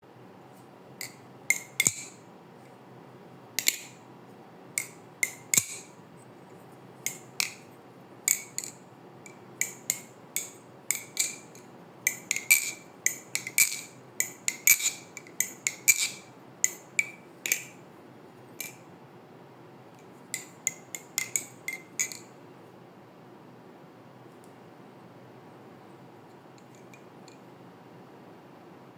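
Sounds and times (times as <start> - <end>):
balisong knife clacking: 1.0 - 2.2, 3.6 - 4.0, 4.8 - 5.9, 7.1 - 7.6, 8.3 - 17.8, 20.4 - 22.3.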